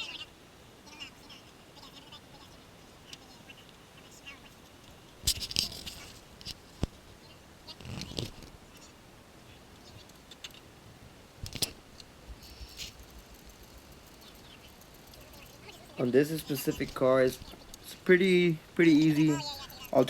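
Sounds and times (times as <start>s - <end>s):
hand tools and metal parts clicking: 12.7s - 15.7s.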